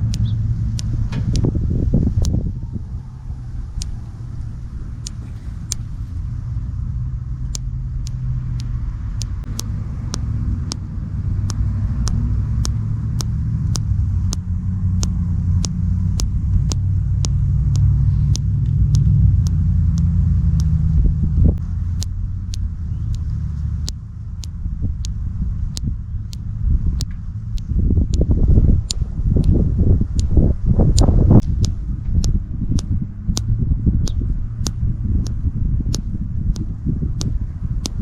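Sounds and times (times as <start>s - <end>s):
thumb joint popping: 0.0s - 2.4s, 3.8s - 4.1s, 5.0s - 5.9s, 7.4s - 20.9s, 22.0s - 38.0s
low rumble: 0.0s - 38.0s.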